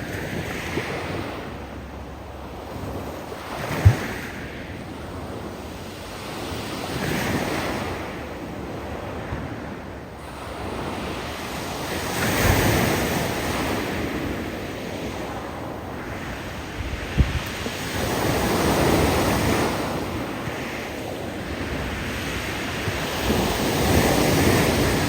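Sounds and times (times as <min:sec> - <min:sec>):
surf breaking on stony beach: 0:10.2 - 0:25.0.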